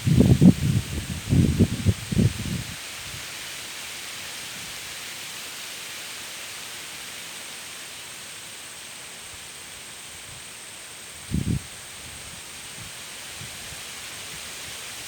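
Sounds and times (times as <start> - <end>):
white noise hiss: 0.0 - 15.0.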